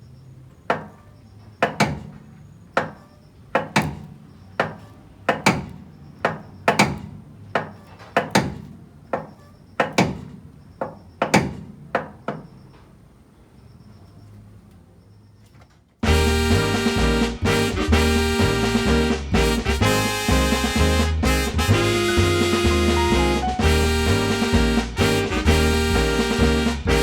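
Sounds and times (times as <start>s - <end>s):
hammer strikes ringing: 1.6s - 2.2s, 2.8s - 8.6s.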